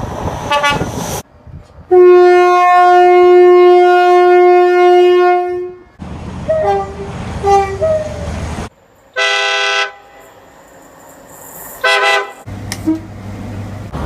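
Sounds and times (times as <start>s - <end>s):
train horn: 0.5s - 0.9s, 1.9s - 5.9s, 6.5s - 8.3s, 9.2s - 10.2s, 11.8s - 13.0s
two-tone horn toots: 1.9s - 5.9s, 6.5s - 8.2s.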